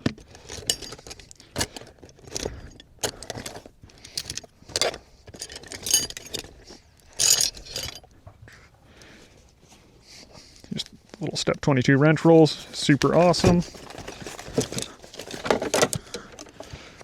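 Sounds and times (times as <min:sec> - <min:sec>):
metal tools clinking: 0:00.0 - 0:08.2, 0:13.6 - 0:16.6.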